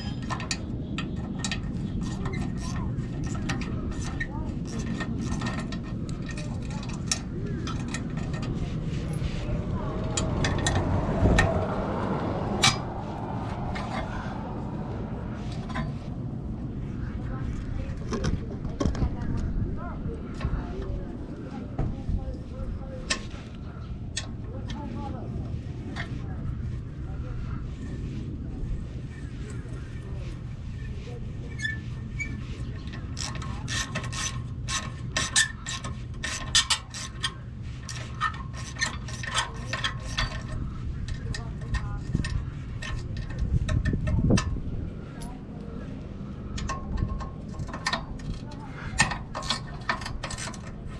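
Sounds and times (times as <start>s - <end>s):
tools scraping and clinking on metal: 0.0s - 19.4s, 20.3s - 50.9s
steady low hum: 0.0s - 50.9s
steady low rumble: 0.0s - 50.9s
clicks of tools being handled: 46.4s - 50.9s
metal tool clank: 46.5s - 50.8s.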